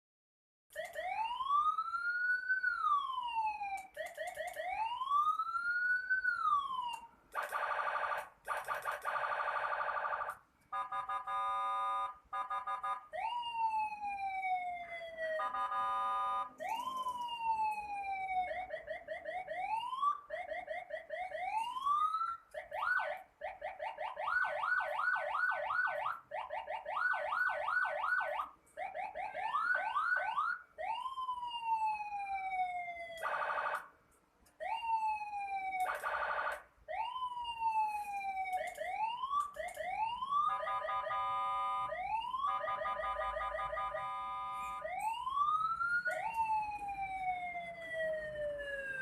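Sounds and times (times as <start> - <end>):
electronic siren cycling tones: 34.6 - 49.0.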